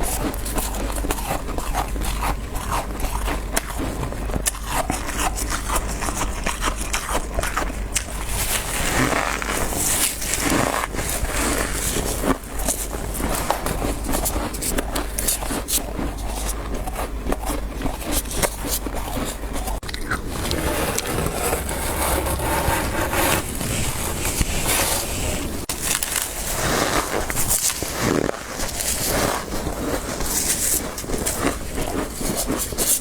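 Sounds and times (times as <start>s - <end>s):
frost being scraped: 18.6s - 31.6s.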